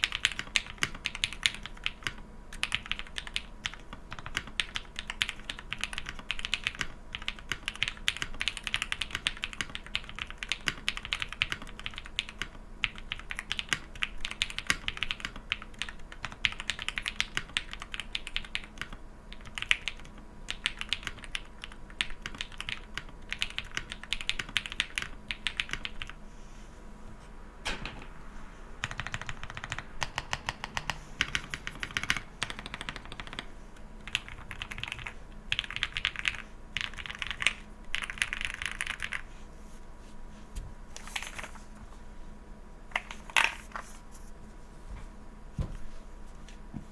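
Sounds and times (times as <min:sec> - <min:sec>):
mechanical keyboard typing: 0:00.0 - 0:26.2, 0:28.8 - 0:39.2.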